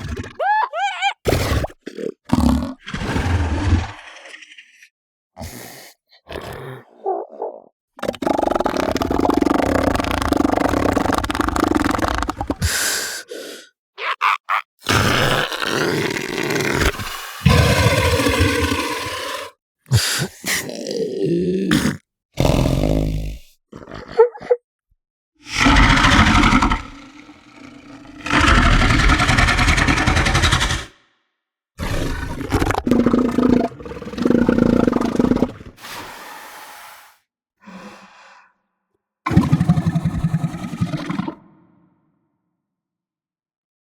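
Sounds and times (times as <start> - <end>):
seal bellowing: 0.0 - 1.7, 14.0 - 19.5, 25.4 - 30.9
seal higher-pitched cries: 0.3 - 1.3, 14.0 - 14.8.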